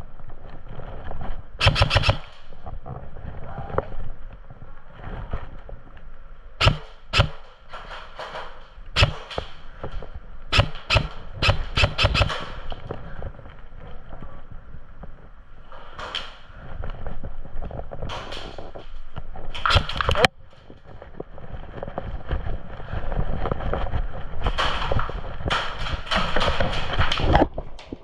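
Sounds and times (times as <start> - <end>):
rustling movement: 0.3 - 28.0
airsoft gun shots: 1.6 - 2.4, 6.6 - 8.0, 9.0 - 9.6, 10.5 - 12.6, 19.6 - 20.3.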